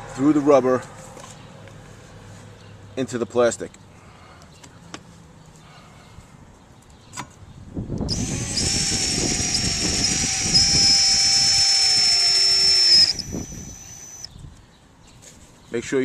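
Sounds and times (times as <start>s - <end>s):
power drill whining: 8.1s - 14.3s.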